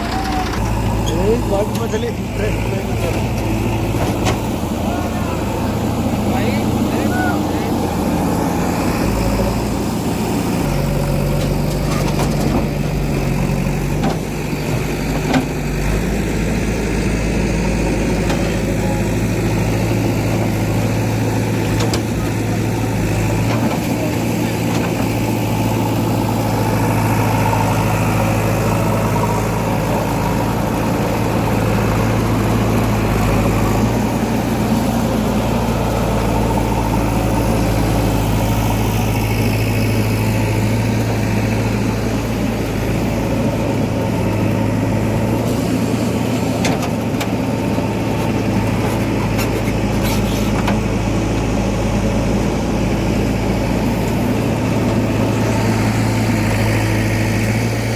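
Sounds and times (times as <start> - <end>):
diesel engine running: 0.0 - 57.9.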